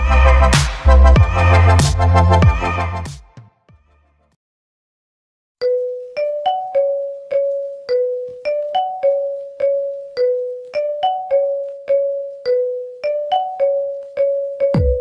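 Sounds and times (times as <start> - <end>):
phone ringtone melody: 5.6 - 15.0.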